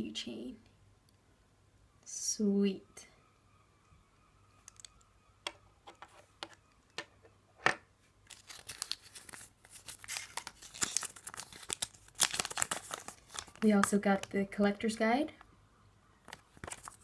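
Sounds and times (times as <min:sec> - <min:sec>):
sharp clicks: 0:04.6 - 0:07.1
packaging crinkling and rustling: 0:08.2 - 0:14.3, 0:16.2 - 0:17.0.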